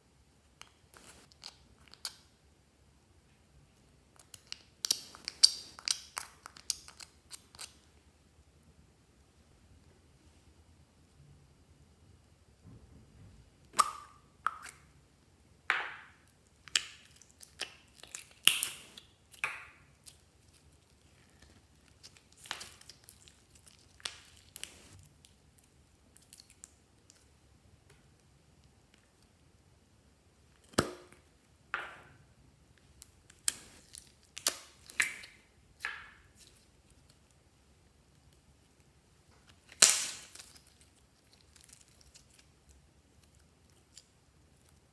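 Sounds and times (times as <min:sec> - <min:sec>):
slime popping and squelching: 0:15.7 - 0:25.2, 0:39.5 - 0:42.5.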